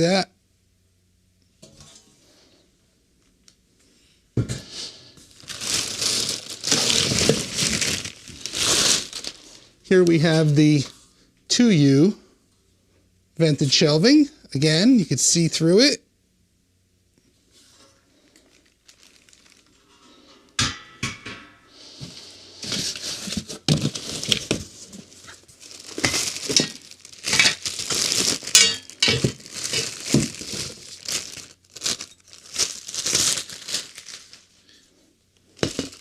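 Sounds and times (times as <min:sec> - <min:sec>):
packaging crinkling and rustling: 0:05.2 - 0:11.0, 0:17.6 - 0:20.3, 0:22.6 - 0:36.0.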